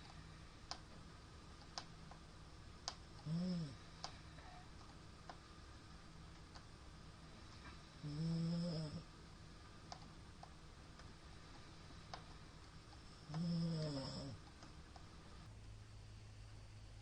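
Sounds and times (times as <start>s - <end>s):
man snoring: 3.2s - 3.8s, 8.0s - 9.0s, 13.2s - 14.4s.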